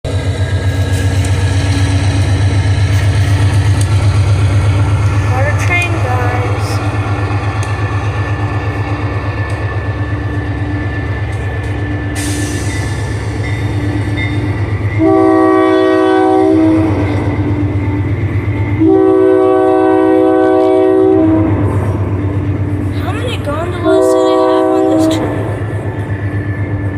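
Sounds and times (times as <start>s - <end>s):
diesel locomotive drone: 0.0s - 26.9s
train horn blasts: 14.9s - 17.1s, 18.8s - 21.7s, 23.8s - 25.5s.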